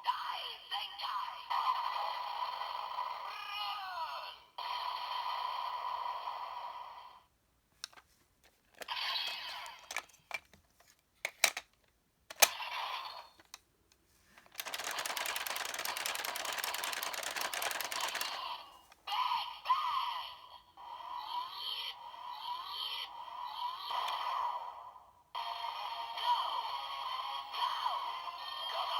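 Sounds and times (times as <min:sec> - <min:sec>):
sharp clicks: 0:11.3 - 0:12.6, 0:14.4 - 0:18.4
rapid clattering: 0:14.4 - 0:18.4.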